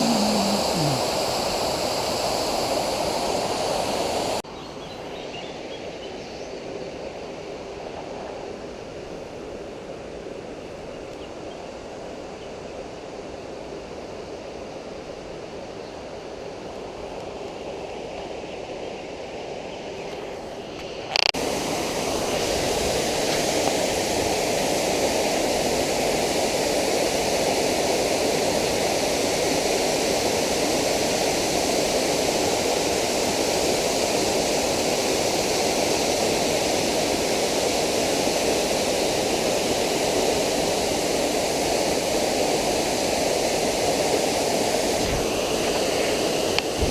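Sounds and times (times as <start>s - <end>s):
waterfall rushing: 0.0s - 4.4s.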